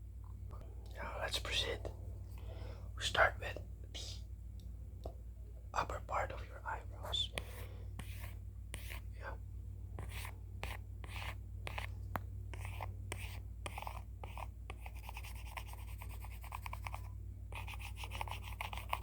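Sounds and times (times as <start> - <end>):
steady low hum: 0.0 - 19.0
pencil sketching strokes: 7.2 - 9.1, 10.0 - 11.9, 12.5 - 19.0.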